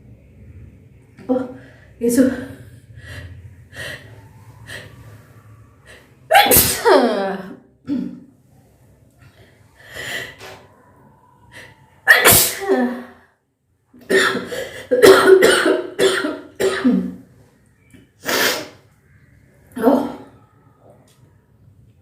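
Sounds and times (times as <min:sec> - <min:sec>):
woman sneezing: 0:06.3 - 0:07.3, 0:12.1 - 0:13.1.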